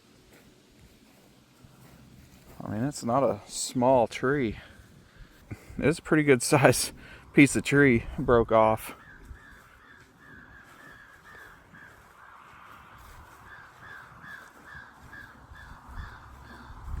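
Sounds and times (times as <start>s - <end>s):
bird calling: 8.2s - 17.0s.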